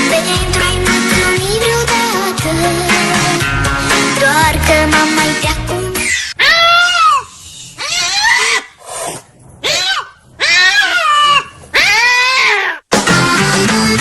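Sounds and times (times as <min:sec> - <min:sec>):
dog whining howls: 0:09.6 - 0:12.8.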